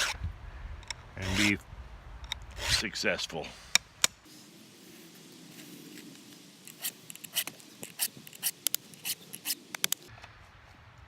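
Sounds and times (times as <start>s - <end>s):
file scraping saw chain: 1.2s - 1.6s, 2.6s - 2.8s, 6.7s - 9.6s.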